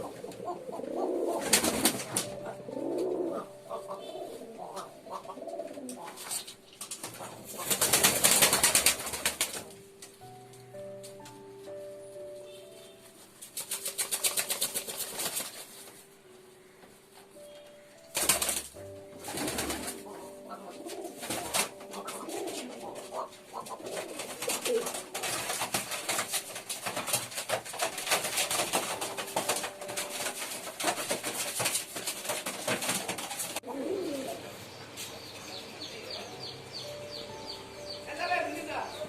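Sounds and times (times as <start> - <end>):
pigeons cooing: 0.0 - 9.9, 18.2 - 36.1
rustling and clicking: 4.5 - 11.6, 13.0 - 20.2, 20.8 - 33.6.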